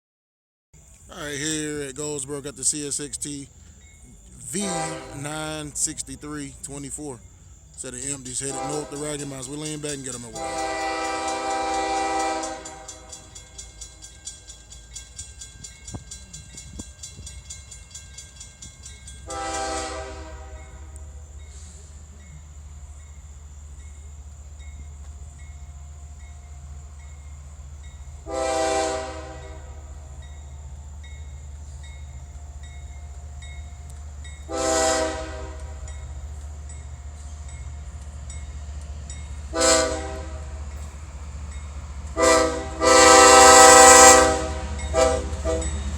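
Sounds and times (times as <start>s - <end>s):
diesel locomotive rumble: 0.8s - 45.9s
locomotive air horn blasts: 4.4s - 7.1s, 7.8s - 13.4s, 19.2s - 21.8s, 28.2s - 30.0s, 34.5s - 35.9s, 39.5s - 40.7s, 42.1s - 45.9s.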